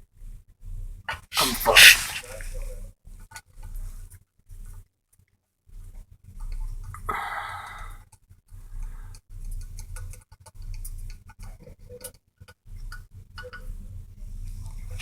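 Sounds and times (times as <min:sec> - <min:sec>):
rasping scrape: 0:01.3 - 0:02.6.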